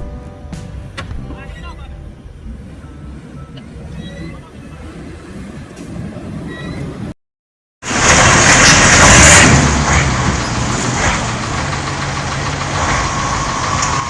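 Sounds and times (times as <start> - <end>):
heavy machine engine running hard: 7.8 - 14.0.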